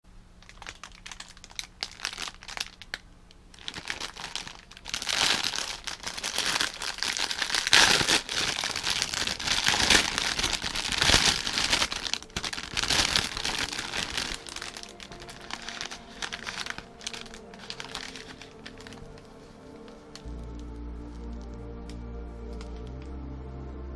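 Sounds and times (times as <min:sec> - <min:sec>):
plastic packaging crinkling: 0:00.4 - 0:23.0.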